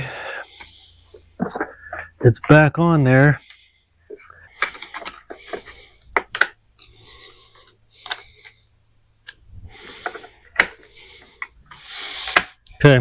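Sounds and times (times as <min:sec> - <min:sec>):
soft rattling and rustling: 0:03.4 - 0:08.6, 0:09.6 - 0:12.8.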